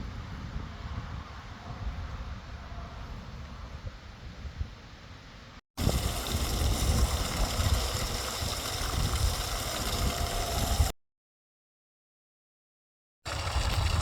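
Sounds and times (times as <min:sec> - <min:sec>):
water rushing from well: 0:05.8 - 0:10.9, 0:13.3 - 0:14.0.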